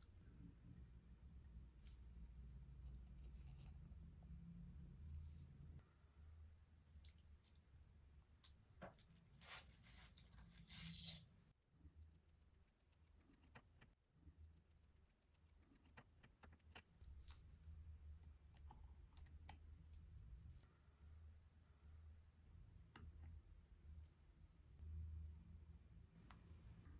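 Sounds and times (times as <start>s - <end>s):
faint low hum: 0.0s - 26.9s
small metal tools clicking: 10.7s - 17.4s
watch ticking fast: 11.6s - 17.0s.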